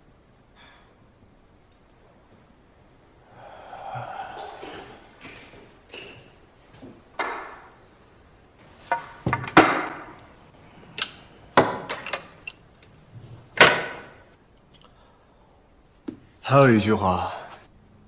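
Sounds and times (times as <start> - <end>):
billiard balls clacking: 4.3 - 7.8, 8.7 - 14.3.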